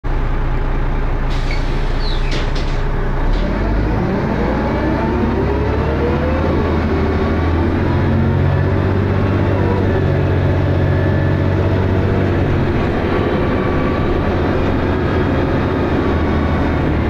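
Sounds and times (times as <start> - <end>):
bus engine running: 0.1 - 17.0
short high squeaks: 1.3 - 2.8.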